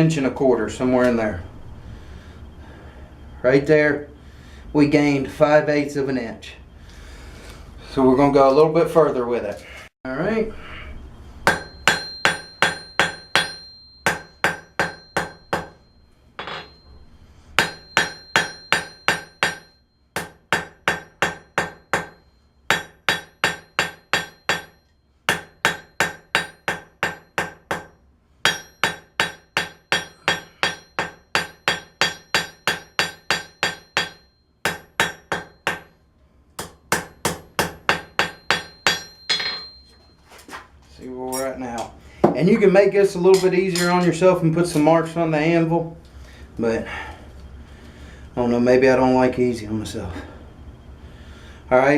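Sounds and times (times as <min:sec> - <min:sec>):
hammer ringing on steel: 0:11.4 - 0:17.0, 0:17.6 - 0:36.0, 0:36.6 - 0:40.0, 0:43.2 - 0:44.3.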